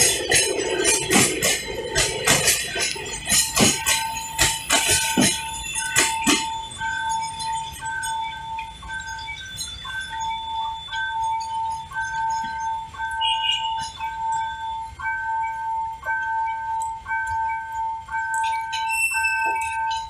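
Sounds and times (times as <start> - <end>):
train wheels clacking over rail joints: 0.0 - 6.7
two-tone electronic warning chime: 0.0 - 20.0.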